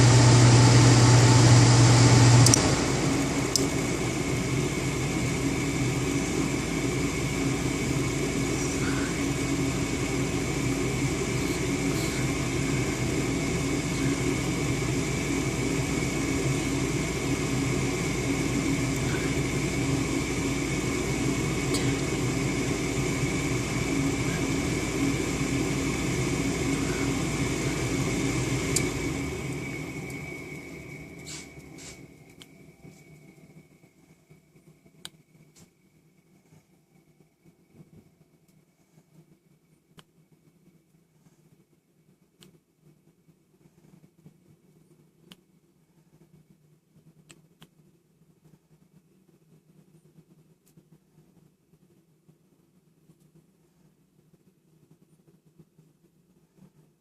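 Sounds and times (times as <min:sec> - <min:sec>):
furnace motor whir: 0:00.0 - 0:35.1
faint whine: 0:00.0 - 0:57.0
furnace low hum: 0:00.0 - 0:57.0.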